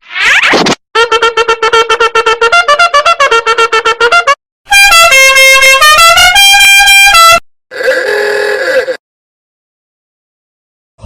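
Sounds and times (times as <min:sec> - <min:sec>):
brassy horn-like staccato notes: 0:01.0 - 0:07.4
brassy horn-like tune: 0:01.0 - 0:07.4.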